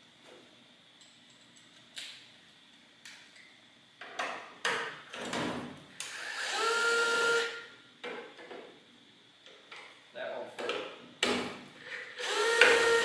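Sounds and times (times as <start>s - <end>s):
power drill whirring: 6.1s - 7.6s, 12.2s - 13.0s.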